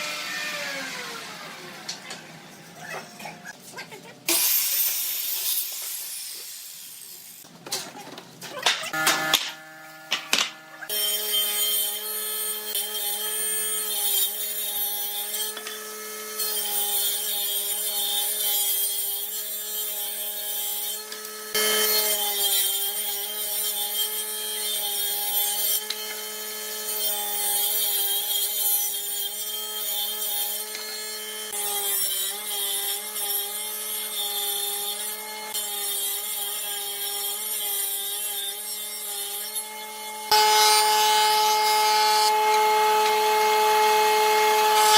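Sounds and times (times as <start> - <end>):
power tool working wood: 0.0 - 2.0, 21.0 - 44.9.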